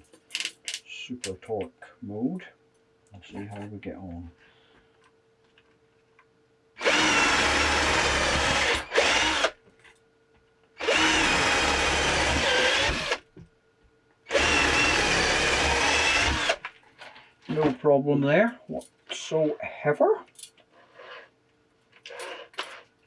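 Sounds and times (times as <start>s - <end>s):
cordless drill boring into wood: 6.8s - 9.6s, 10.8s - 13.2s, 14.3s - 16.6s.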